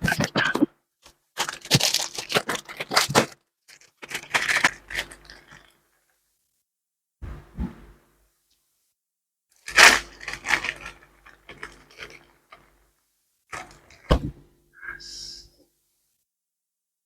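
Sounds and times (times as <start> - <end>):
crunchy food chewing: 1.4 - 5.8.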